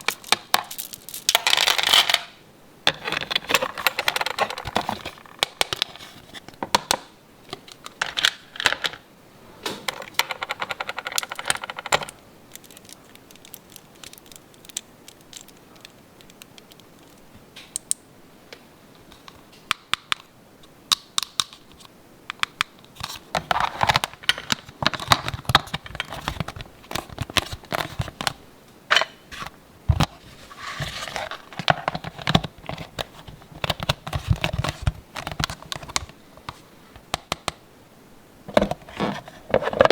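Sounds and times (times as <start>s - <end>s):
plastic packaging crinkling: 0.0s - 2.1s, 10.1s - 17.3s
plastic toy pieces clicking: 10.2s - 18.0s.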